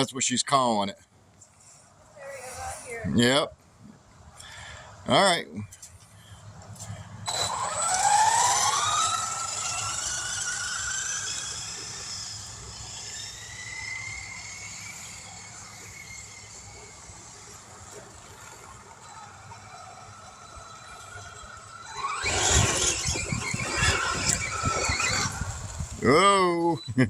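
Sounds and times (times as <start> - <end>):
rc car electric motor whining: 6.8 - 26.4.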